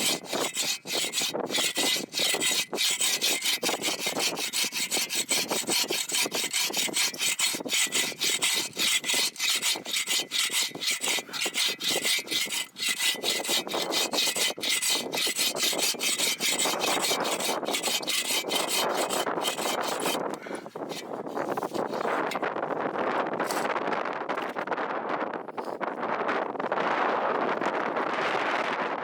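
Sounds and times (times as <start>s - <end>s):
hand saw cutting wood: 0.0s - 22.4s.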